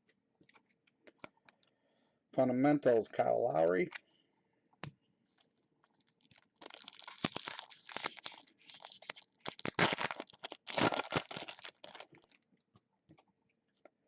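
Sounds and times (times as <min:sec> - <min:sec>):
foil wrapper tearing and crinkling: 0:06.0 - 0:12.4.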